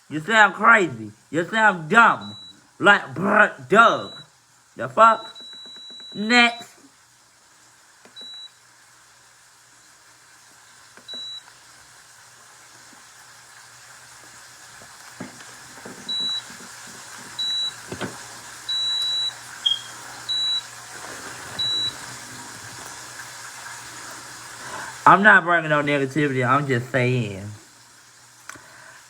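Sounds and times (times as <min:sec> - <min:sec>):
steady hiss: 0:00.0 - 0:29.0
high-pitched electronic beeps: 0:03.9 - 0:04.3, 0:05.2 - 0:06.7, 0:18.7 - 0:20.6.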